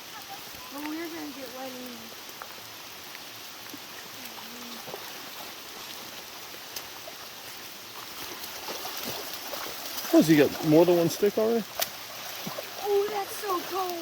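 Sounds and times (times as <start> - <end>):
creek water rushing: 0.0 - 14.0
faint ticks: 6.6 - 7.2.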